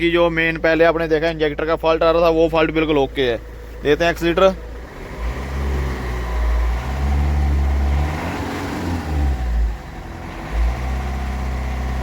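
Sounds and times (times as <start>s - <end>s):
car engine revving: 4.6s - 12.0s.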